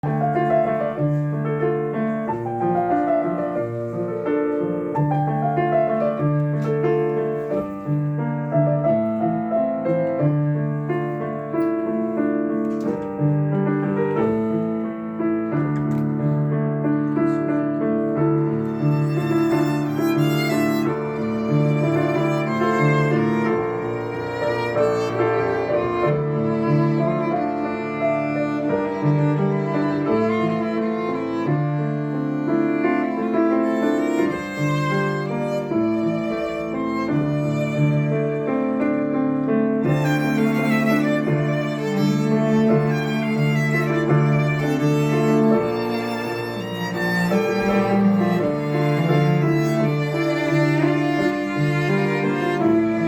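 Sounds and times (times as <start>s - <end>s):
piano accompaniment: 0.0s - 53.0s
bowed strings: 18.3s - 39.0s, 39.6s - 53.0s.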